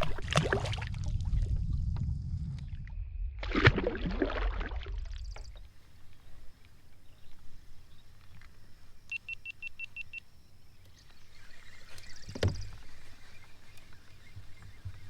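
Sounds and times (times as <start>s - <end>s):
wind rumble on microphone: 0.0s - 5.7s
water splashing against kayak: 0.0s - 5.8s.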